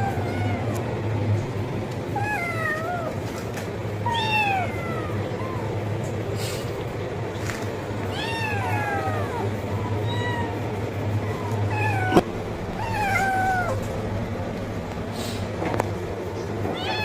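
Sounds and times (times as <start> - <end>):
kitten meowing: 4.0 - 5.7, 8.1 - 10.6, 11.2 - 12.2, 12.8 - 13.8, 16.7 - 17.0.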